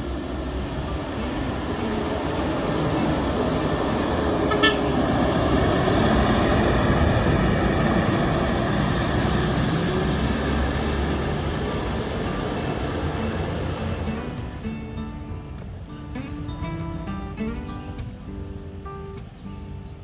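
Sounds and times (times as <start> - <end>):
bus driving past: 0.0 - 20.0
bus horn toot: 4.3 - 5.6.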